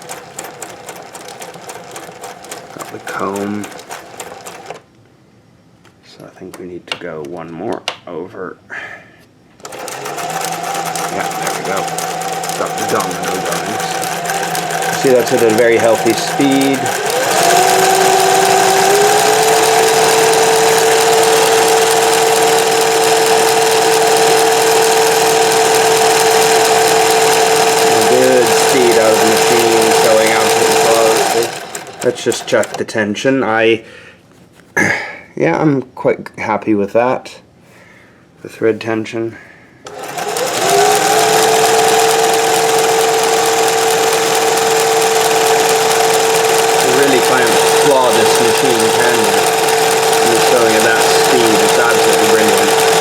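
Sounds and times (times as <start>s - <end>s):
sewing machine whine: 0.0s - 4.8s, 9.6s - 33.2s, 39.9s - 53.0s.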